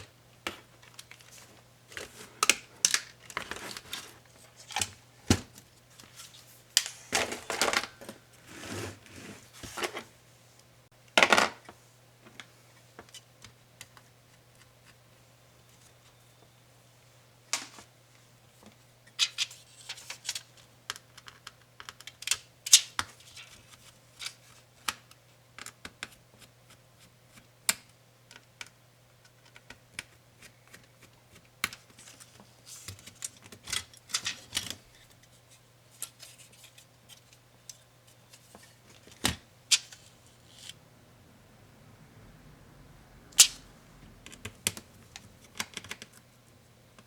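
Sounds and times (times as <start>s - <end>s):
faint low hum: 30.4s - 47.0s
laptop parts and tools clicking: 44.2s - 46.2s.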